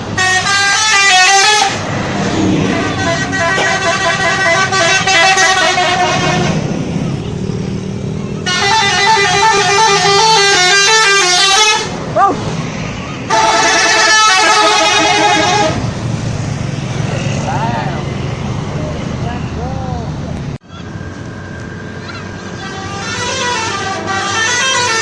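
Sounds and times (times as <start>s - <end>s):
multi-tone musical bus horn: 0.0s - 6.8s, 8.4s - 12.0s, 13.3s - 16.0s, 22.5s - 25.0s.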